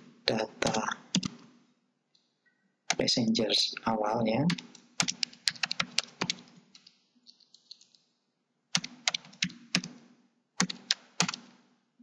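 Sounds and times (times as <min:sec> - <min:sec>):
typing on computer keyboard: 0:00.7 - 0:01.4, 0:04.5 - 0:08.0, 0:08.8 - 0:10.0, 0:10.6 - 0:11.6.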